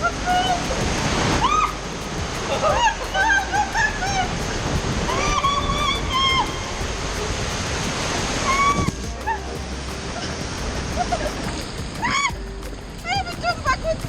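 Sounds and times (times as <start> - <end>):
high-pitched held calls: 0.0 - 7.6, 8.2 - 13.7
rushing splashing water: 0.0 - 14.0.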